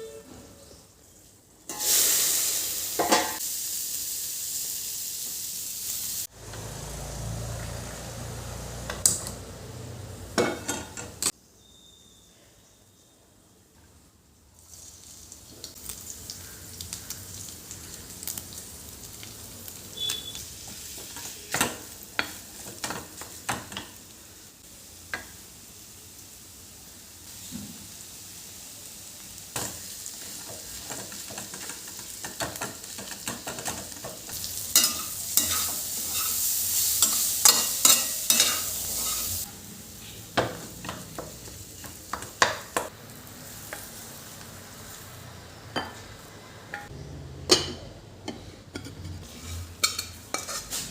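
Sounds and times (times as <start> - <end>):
food sizzling in a pan: 0.7 - 11.4, 14.5 - 46.9, 48.7 - 50.9
spatula scraping and tapping pan: 37.0 - 39.3, 47.5 - 50.9.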